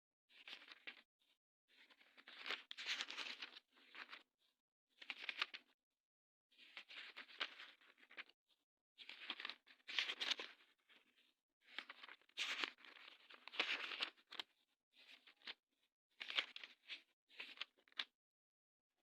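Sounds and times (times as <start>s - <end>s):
paper rustling being flipped: 6.6s - 8.3s, 11.7s - 14.4s, 16.2s - 18.1s.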